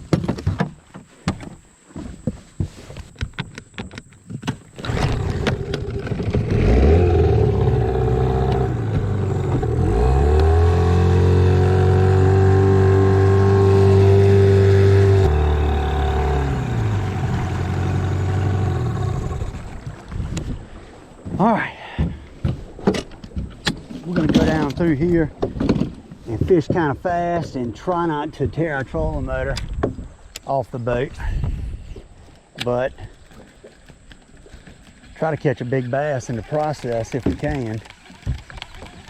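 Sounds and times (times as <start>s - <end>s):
knocks and rattles on boat: 0.0s - 20.6s, 21.2s - 30.1s, 36.2s - 39.0s
outboard motor running: 4.7s - 21.0s.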